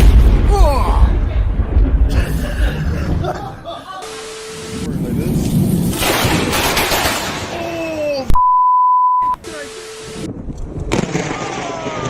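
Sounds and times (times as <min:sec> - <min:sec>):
storm rushing noise: 0:00.0 - 0:07.6
censor beep: 0:04.0 - 0:04.9, 0:08.4 - 0:10.3.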